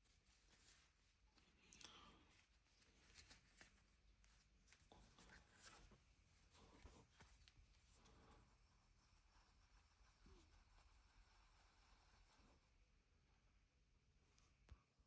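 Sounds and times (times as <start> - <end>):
faint handling clicks and rustles: 0.0 - 8.5.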